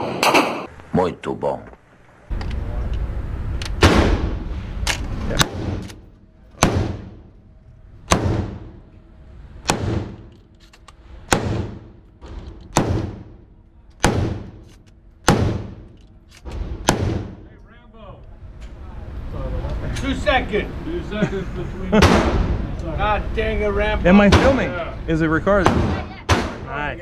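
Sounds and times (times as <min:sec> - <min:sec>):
gunshots with reverberation: 0:03.8 - 0:04.4, 0:05.4 - 0:07.3, 0:08.1 - 0:08.8, 0:09.6 - 0:10.3, 0:11.2 - 0:12.0, 0:12.6 - 0:17.5.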